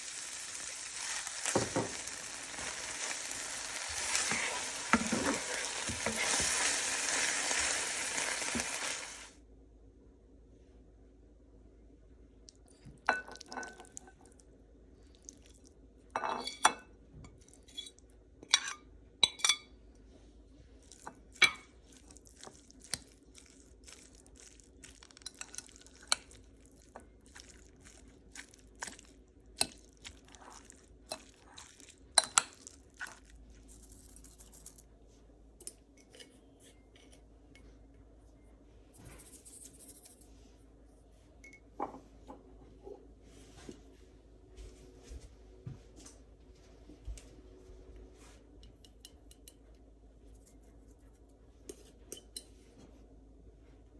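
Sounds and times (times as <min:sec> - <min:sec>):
dishes and utensils clinking: 0:00.8 - 0:09.2.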